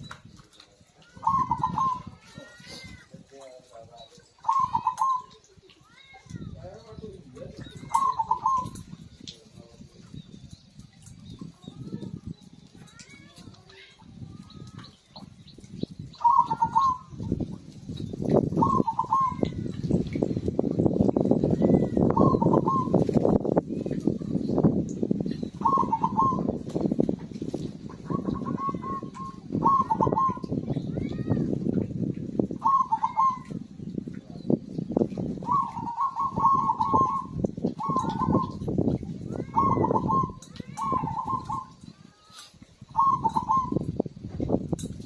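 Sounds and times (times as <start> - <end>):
small birds chirping: 0.0 - 44.3
dove cooing: 1.2 - 3.0, 4.4 - 5.5, 7.6 - 9.0, 16.2 - 17.2, 18.5 - 19.7, 22.0 - 23.1, 25.6 - 26.6, 28.0 - 30.5, 32.6 - 33.6, 35.4 - 38.7, 39.4 - 41.8, 42.9 - 43.9.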